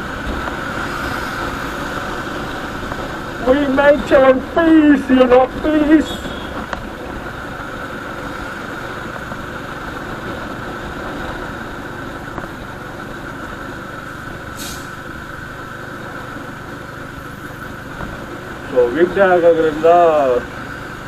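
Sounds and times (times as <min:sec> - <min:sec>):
road and wind noise: 0:00.0 - 0:21.0
vehicle engine drone: 0:00.0 - 0:21.0
brief hiss: 0:14.6 - 0:15.0.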